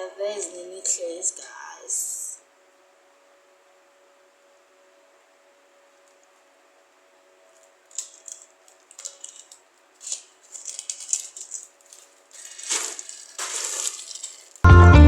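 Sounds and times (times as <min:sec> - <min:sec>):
metal jewellery clinking: 0:07.6 - 0:14.7.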